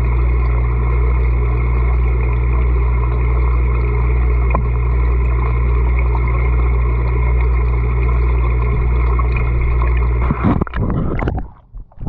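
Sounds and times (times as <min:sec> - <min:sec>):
underwater hum: 0:00.0 - 0:12.0
splashes: 0:03.5 - 0:11.6.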